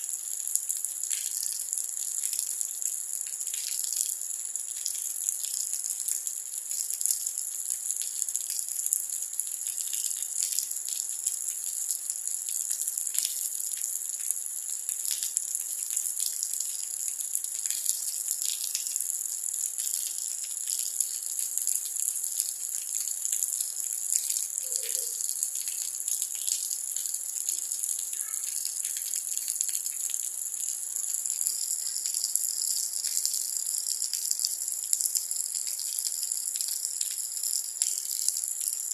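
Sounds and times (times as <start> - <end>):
steady rainfall: 0.0 - 38.9.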